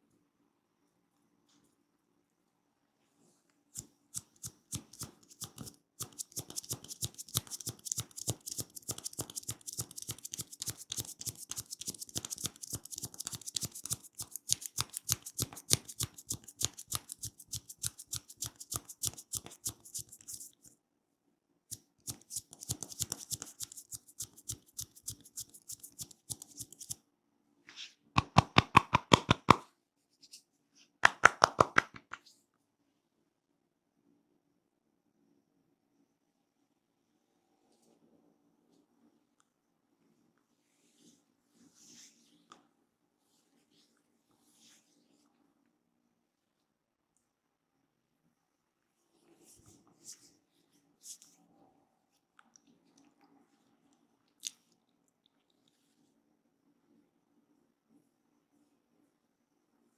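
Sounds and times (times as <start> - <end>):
fingers rubbing in hair: 3.8 - 20.7, 21.7 - 27.0
rapid tapping on head: 4.2 - 20.5, 22.1 - 27.0, 28.2 - 29.6, 31.0 - 32.1.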